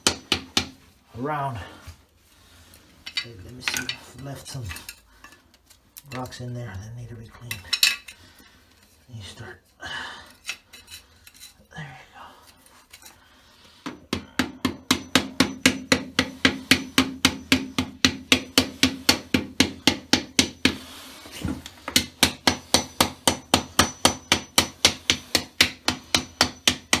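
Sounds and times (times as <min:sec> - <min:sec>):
hammer striking metal: 0:00.0 - 0:00.8, 0:13.8 - 0:20.9, 0:21.9 - 0:27.0.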